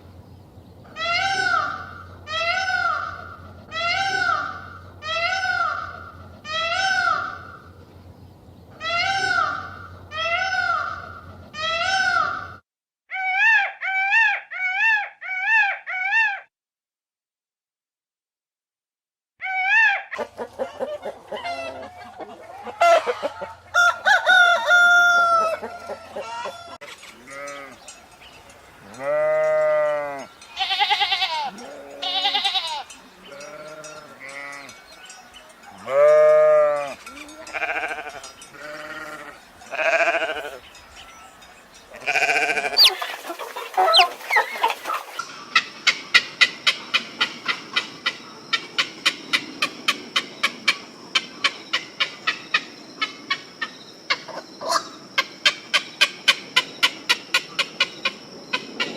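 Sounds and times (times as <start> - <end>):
chickens clucking: 20.2 - 27.2, 42.6 - 56.2
rooster crowing: 22.7 - 26.8, 42.7 - 45.2
sheep bleating: 28.9 - 34.7, 35.8 - 40.6, 41.9 - 44.1
short repeated animal calls: 42.1 - 45.2.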